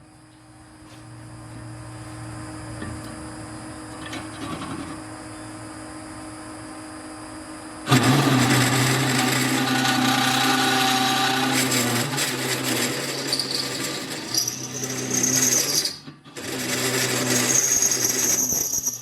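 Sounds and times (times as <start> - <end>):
drill press motor humming: 7.8 - 19.0
cutter grinding into metal: 7.9 - 19.0.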